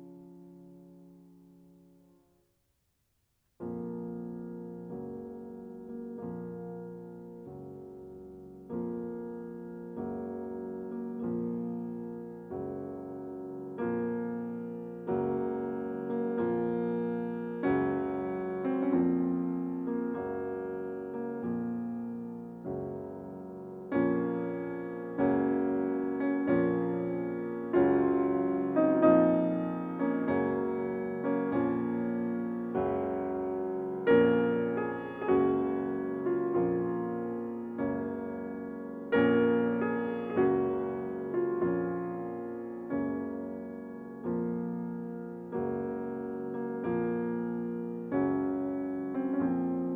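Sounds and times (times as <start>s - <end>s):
slow gentle piano music: 0.0s - 2.5s, 3.6s - 49.9s.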